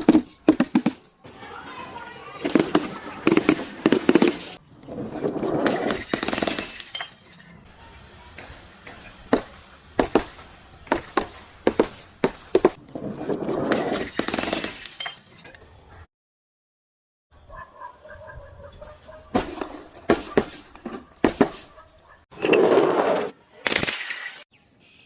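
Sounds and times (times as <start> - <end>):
glass cracks and clinks: 5.8 - 7.6, 14.0 - 15.6, 23.7 - 24.5
glass crunching and shattering: 23.7 - 24.5.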